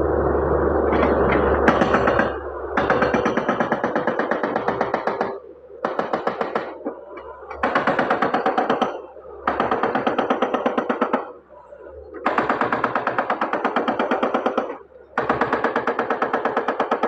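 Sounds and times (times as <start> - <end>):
hydraulic breaker hammering: 0.9 - 11.4, 12.2 - 17.0.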